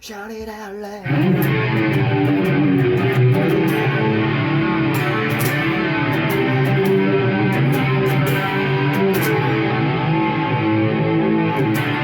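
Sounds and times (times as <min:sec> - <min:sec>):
electric guitar rock riff: 0:01.0 - 0:12.0.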